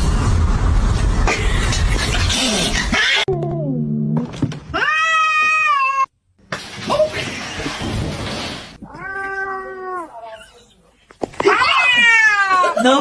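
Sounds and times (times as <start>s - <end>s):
cat meowing: 4.7s - 6.1s, 8.8s - 10.7s, 11.4s - 12.8s.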